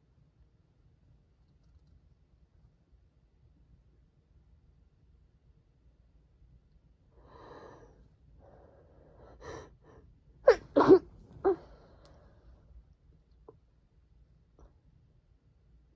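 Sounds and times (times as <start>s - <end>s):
person gasping breaths: 7.2s - 12.6s
person sneezing: 10.5s - 11.8s.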